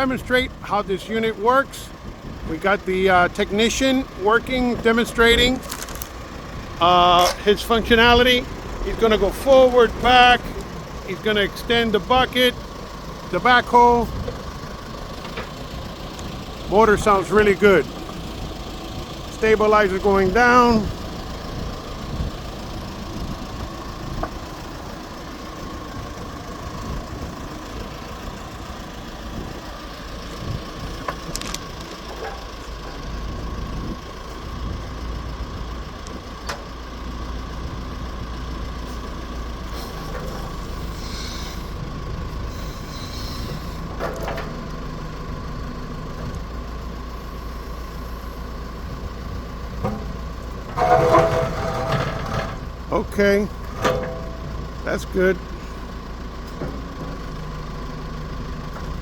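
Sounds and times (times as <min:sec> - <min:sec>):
diesel engine running: 0:00.0 - 0:59.0
machine clanks: 0:49.8 - 0:52.8, 0:53.6 - 0:54.6.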